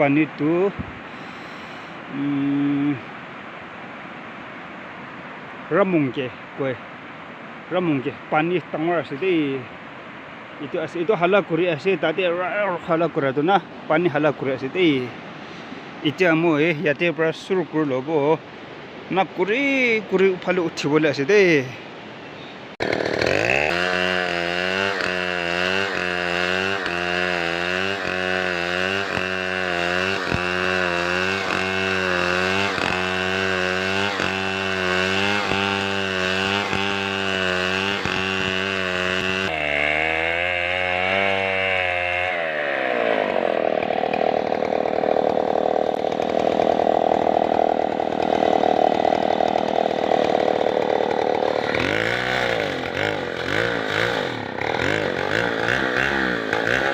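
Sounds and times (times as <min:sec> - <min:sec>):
chainsaw running: 0:22.8 - 0:56.9.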